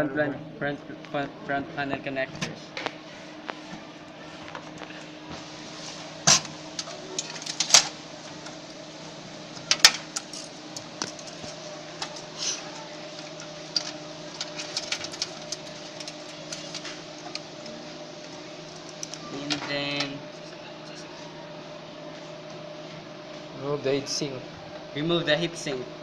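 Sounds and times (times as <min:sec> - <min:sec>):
steady low hum: 0:00.0 - 0:26.0
clicks and knocks of computer parts: 0:06.2 - 0:08.6, 0:09.6 - 0:12.3, 0:13.1 - 0:17.4.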